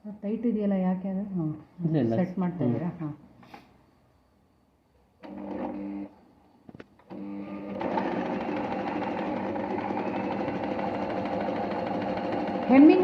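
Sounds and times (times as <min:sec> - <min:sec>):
sewing machine stitching: 0:05.2 - 0:06.1, 0:07.0 - 0:13.0.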